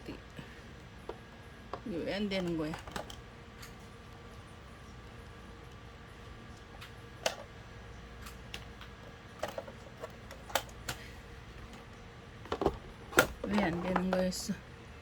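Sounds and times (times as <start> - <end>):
plastic parts clicking and knocking: 1.0 - 3.8, 6.8 - 7.5, 8.2 - 14.5.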